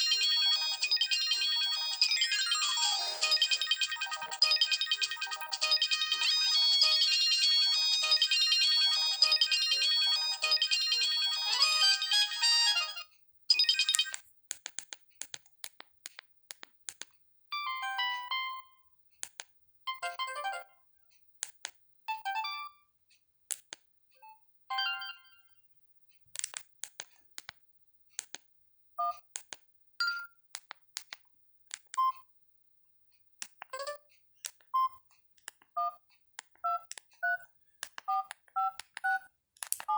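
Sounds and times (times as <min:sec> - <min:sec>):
phone ringtone melody: 0:00.0 - 0:14.2, 0:20.0 - 0:20.8, 0:22.2 - 0:22.8.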